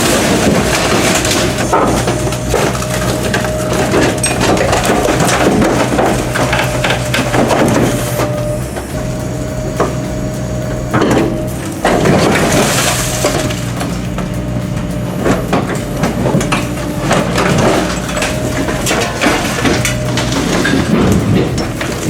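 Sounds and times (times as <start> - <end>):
diesel engine hum: 0.0 - 22.0
heavy machine crushing metal: 0.0 - 22.0
metal and glass crunching: 0.0 - 22.0.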